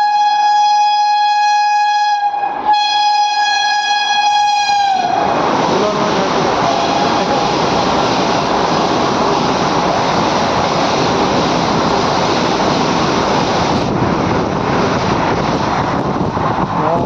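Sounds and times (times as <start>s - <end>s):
train passing at speed: 0.0s - 17.0s
wind buffeting microphone: 4.2s - 17.0s.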